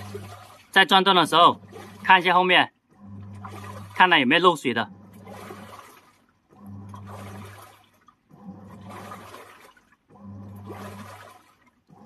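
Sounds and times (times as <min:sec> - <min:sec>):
washing machine motor humming: 0:00.0 - 0:12.0
water sloshing in drum: 0:00.0 - 0:12.0.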